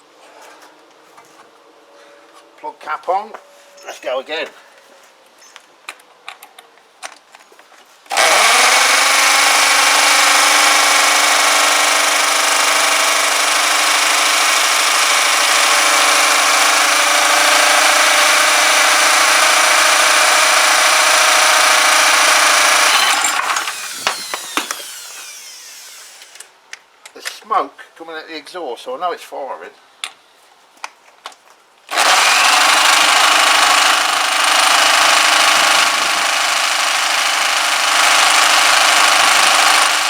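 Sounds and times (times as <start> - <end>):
electric drill spinning engine: 8.1 - 26.5, 31.9 - 40.0.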